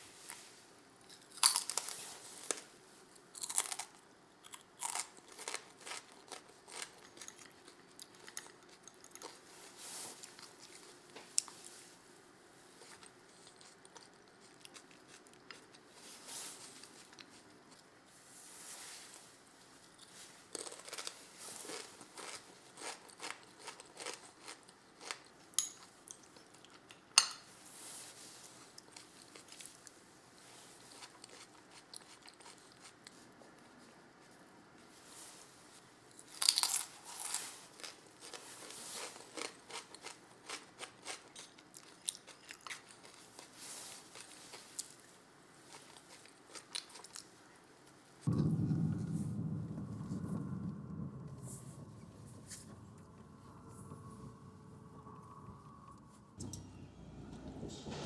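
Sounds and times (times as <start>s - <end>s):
food crunching: 1.0s - 11.6s, 12.8s - 15.9s, 19.9s - 27.0s, 36.1s - 47.4s
sharp knock: 48.3s - 53.2s.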